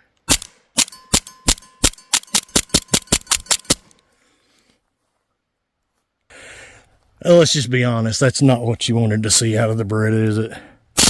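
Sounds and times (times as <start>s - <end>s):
air pistol shots: 0.3s - 3.9s
steel target ringing: 0.8s - 3.8s.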